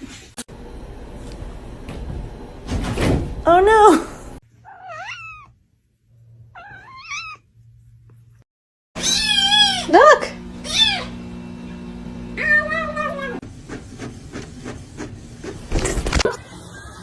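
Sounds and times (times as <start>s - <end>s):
steady hum: 0.5s - 4.4s
cat meowing: 4.6s - 5.6s, 6.5s - 7.5s, 9.0s - 9.9s, 10.6s - 11.1s, 12.4s - 13.4s.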